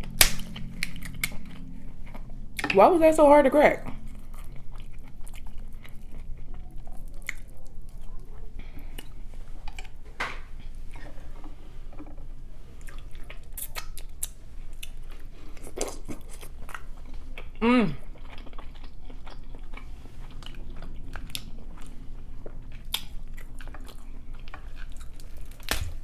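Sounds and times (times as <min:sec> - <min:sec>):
sharp shell cracks: 0:00.0 - 0:01.4
chewing with wet mouth clicks: 0:03.8 - 0:10.0, 0:12.8 - 0:26.0.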